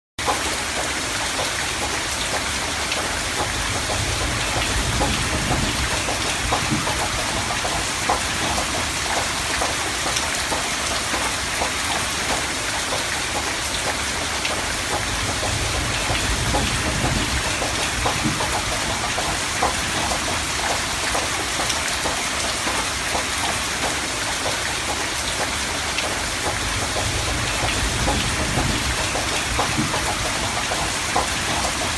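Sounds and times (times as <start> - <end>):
heavy rain pattering: 0.2 - 31.9
distant thunder rumbling: 3.4 - 9.2, 14.9 - 20.4, 26.4 - 31.9.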